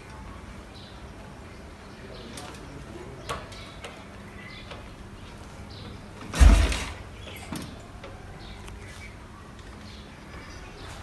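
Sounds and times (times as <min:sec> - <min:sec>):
heavy thump of kick-start: 0:06.3 - 0:07.2
engine turning over: 0:06.4 - 0:07.0.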